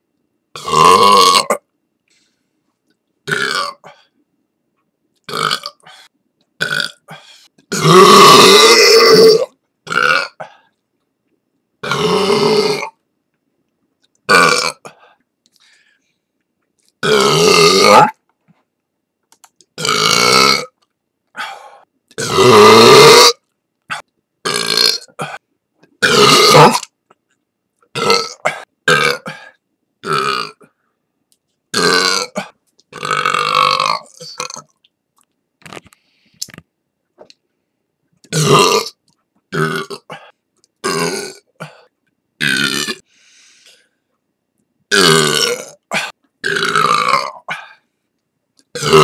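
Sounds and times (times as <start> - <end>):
person burping loudly: 0.6 - 1.7, 3.2 - 4.1, 5.2 - 6.0, 6.6 - 10.6, 11.8 - 13.0, 14.3 - 15.0, 17.0 - 18.2, 19.8 - 20.8, 21.4 - 25.4, 26.0 - 27.0, 27.9 - 30.8, 31.7 - 34.8, 38.3 - 43.0, 44.9 - 47.8, 48.7 - 49.0.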